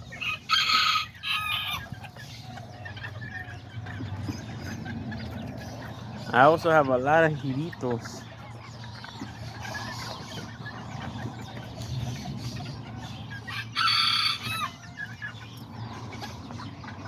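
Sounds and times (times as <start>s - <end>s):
chickens clucking and chirping: 0.0s - 17.0s
rooster crowing: 0.2s - 1.9s, 13.5s - 14.8s.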